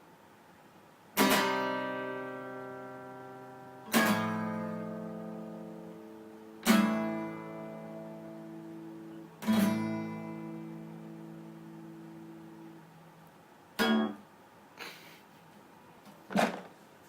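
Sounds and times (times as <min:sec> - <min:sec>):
acoustic guitar chords strummed: 0:01.2 - 0:13.0, 0:13.8 - 0:14.3.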